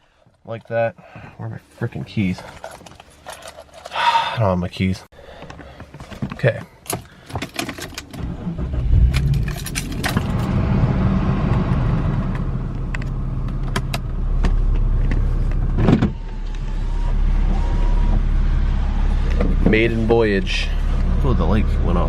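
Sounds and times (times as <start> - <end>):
keys jangling: 2.4 - 4.0, 9.2 - 10.5
car engine starting and running: 7.6 - 22.0.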